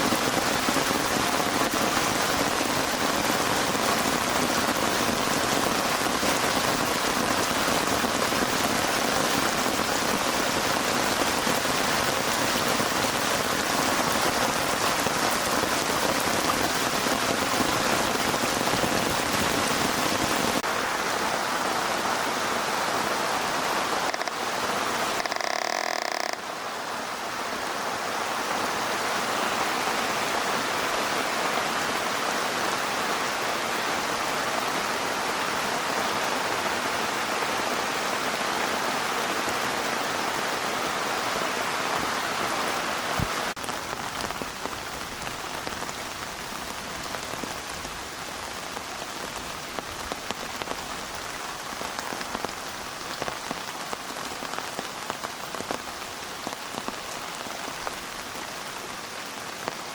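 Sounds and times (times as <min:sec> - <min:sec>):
rain drops ticking: 0:00.0 - 0:27.3, 0:41.8 - 0:59.9
heavy rain hissing: 0:00.0 - 0:59.9.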